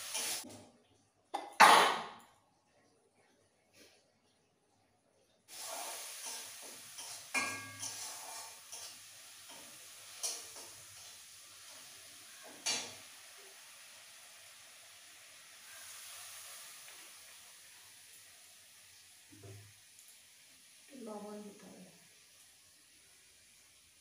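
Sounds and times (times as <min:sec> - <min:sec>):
food sizzling in hot oil: 0:00.0 - 0:00.5, 0:05.5 - 0:24.0
utensil scraping a pan: 0:05.5 - 0:11.8.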